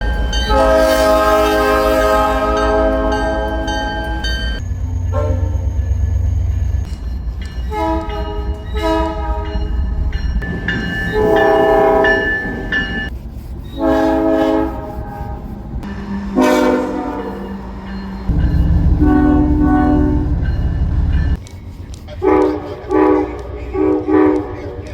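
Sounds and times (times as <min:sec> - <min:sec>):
train horn blasts: 0:00.0 - 0:04.3, 0:05.1 - 0:05.6, 0:07.7 - 0:09.7, 0:11.1 - 0:12.6, 0:13.8 - 0:15.6, 0:16.2 - 0:21.4, 0:22.2 - 0:24.9
low train rumble: 0:00.0 - 0:24.9.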